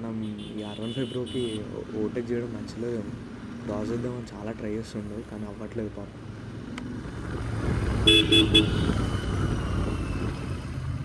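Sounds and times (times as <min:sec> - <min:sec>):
road noise: 0:00.0 - 0:11.0
vehicle horn beeping: 0:08.0 - 0:08.9.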